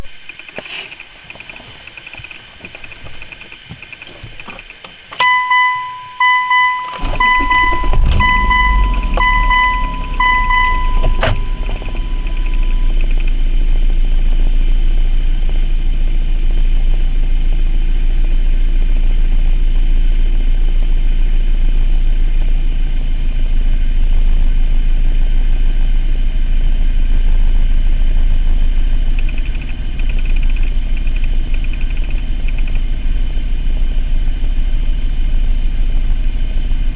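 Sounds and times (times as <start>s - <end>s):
car engine cranking and idling: 0.0s - 36.9s
dashboard warning chime beeping: 5.2s - 13.1s.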